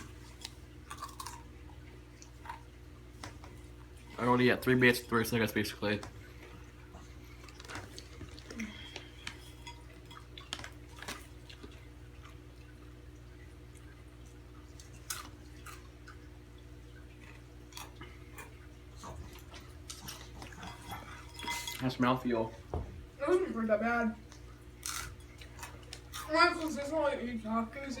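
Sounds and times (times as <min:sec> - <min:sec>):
low electrical hum: 0:00.0 - 0:28.0.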